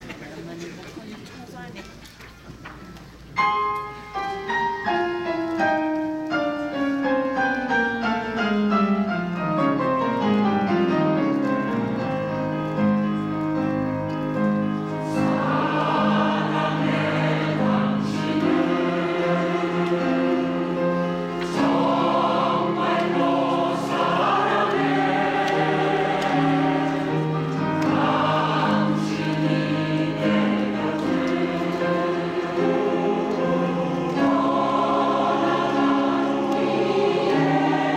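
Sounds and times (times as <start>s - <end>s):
piano accompaniment: 3.3s - 37.9s
women's choir singing: 14.8s - 37.9s.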